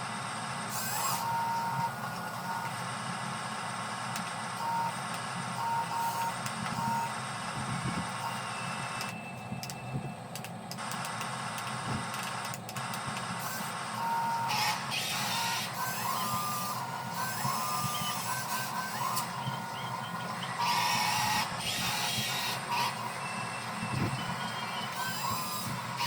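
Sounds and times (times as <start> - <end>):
toy bulldozer motors whirring: 0.0 - 26.0
gear grinding: 14.5 - 26.0.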